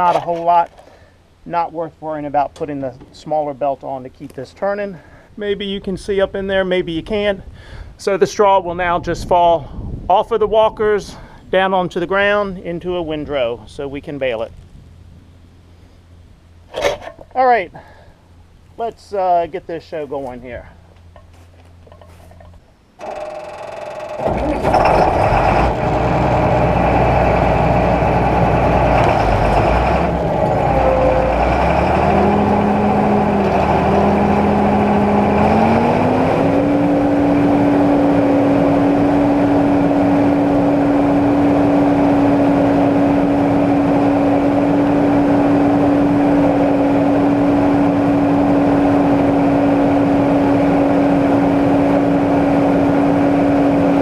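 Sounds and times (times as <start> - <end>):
combine harvester engine revving: 20.6 - 54.0.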